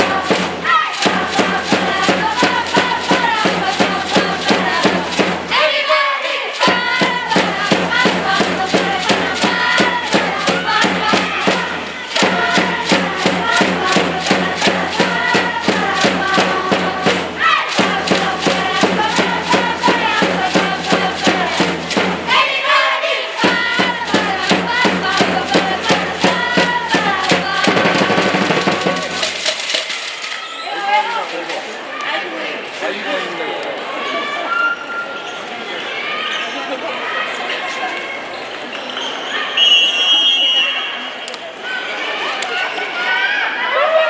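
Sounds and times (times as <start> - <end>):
rapid steady drum beat: 0.0 - 5.6, 6.6 - 22.8, 23.4 - 30.4
spectators singing a chant: 0.0 - 29.8.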